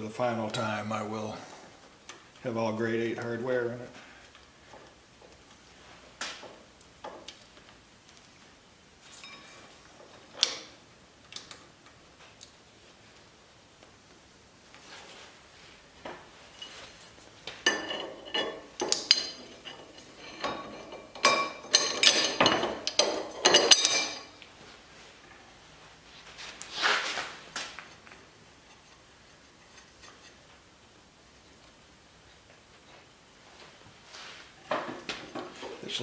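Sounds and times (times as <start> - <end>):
metal scrape: 16.5 - 24.4, 26.4 - 30.5
metal tools clinking: 16.5 - 24.4.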